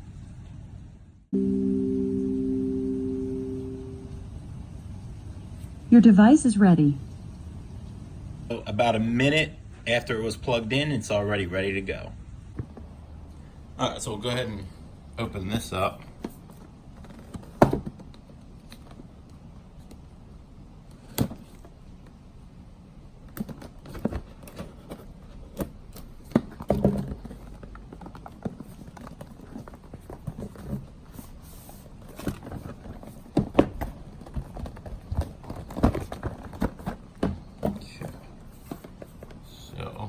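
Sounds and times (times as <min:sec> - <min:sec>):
packaging clicks and rustles: 0:23.2 - 0:39.6.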